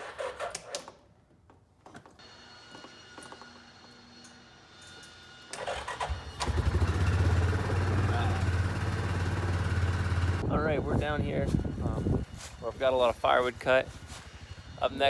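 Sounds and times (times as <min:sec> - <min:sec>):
vehicle engine droning: 0:05.7 - 0:10.5.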